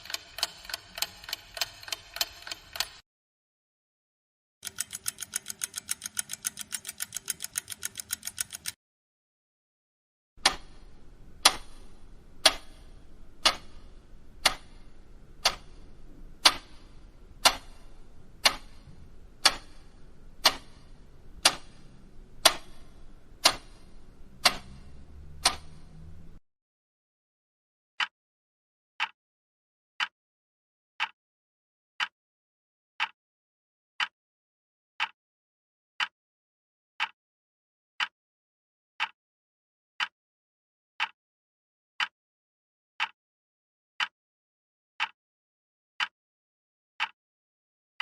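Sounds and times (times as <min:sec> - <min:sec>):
fast clock ticking: 0:00.0 - 0:03.0, 0:04.6 - 0:08.8, 0:11.4 - 0:25.9
slow clock ticking sharply: 0:00.0 - 0:03.0, 0:04.6 - 0:08.8, 0:10.4 - 0:26.1
faint steady hum: 0:10.4 - 0:26.4.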